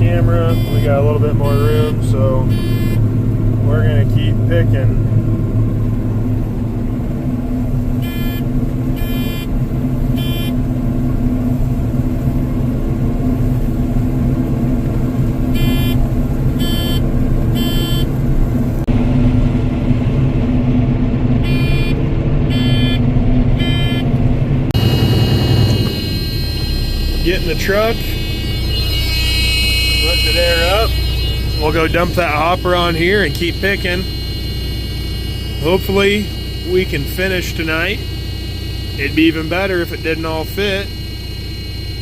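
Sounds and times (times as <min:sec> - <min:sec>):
alarm beeping: 0:00.0 - 0:03.1, 0:08.0 - 0:10.6, 0:15.5 - 0:18.2, 0:21.4 - 0:24.1, 0:24.7 - 0:42.0
higher steady tone: 0:00.0 - 0:05.0, 0:21.4 - 0:42.0
combine harvester running: 0:00.0 - 0:42.0.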